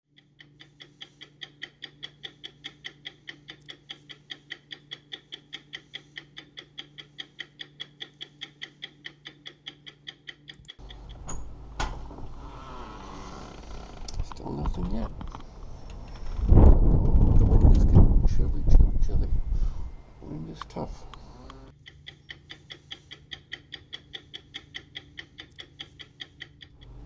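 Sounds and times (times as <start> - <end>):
rapid mechanical ticking: 0.1 - 11.2, 21.7 - 27.0
wind buffeting microphone: 16.0 - 19.9.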